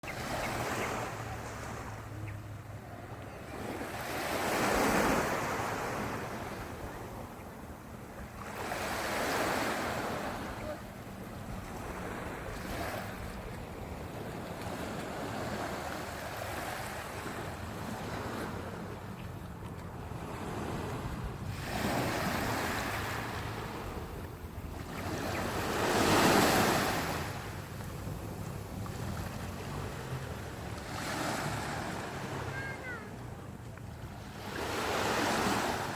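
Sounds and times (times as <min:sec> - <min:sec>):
sea waves breaking: 0:00.0 - 0:35.9
wind rumble on microphone: 0:17.7 - 0:25.6.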